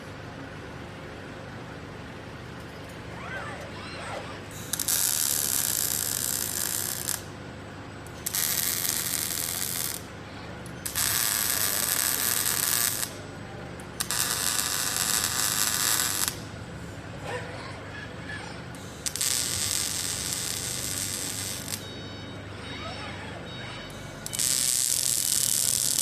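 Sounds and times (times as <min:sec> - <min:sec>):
welding arc crackling and hissing: 0:04.5 - 0:07.3, 0:08.1 - 0:10.1, 0:10.8 - 0:13.2, 0:14.0 - 0:16.4, 0:18.8 - 0:21.8, 0:24.2 - 0:26.0.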